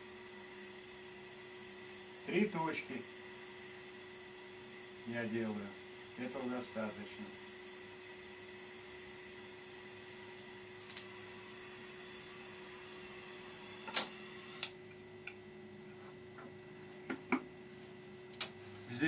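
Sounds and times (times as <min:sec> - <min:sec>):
torch flame hissing: 0:00.0 - 0:14.7.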